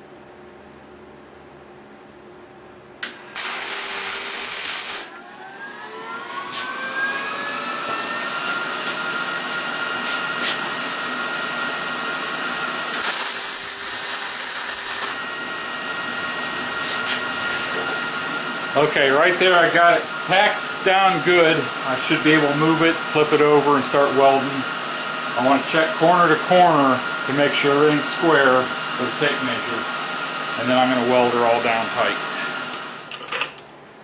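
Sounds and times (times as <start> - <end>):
arc welder sizzling: 3.0 - 33.2
motor whine: 3.1 - 33.2.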